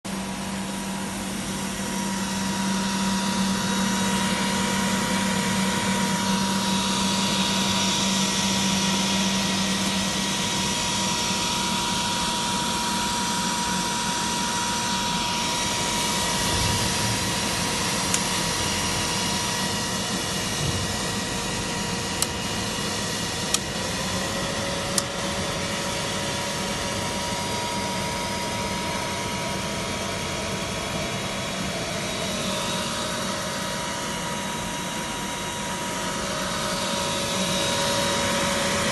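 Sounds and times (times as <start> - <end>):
high whine: 0.1 - 28.7
electrical equipment whirring: 0.1 - 38.9.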